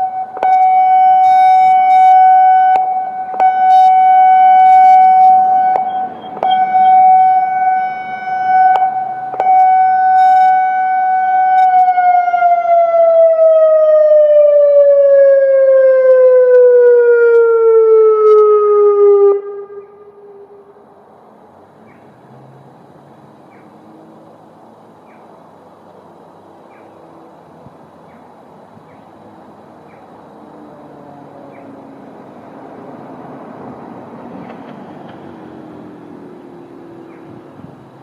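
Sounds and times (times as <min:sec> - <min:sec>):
siren warning tone winding down: 0:00.0 - 0:20.9.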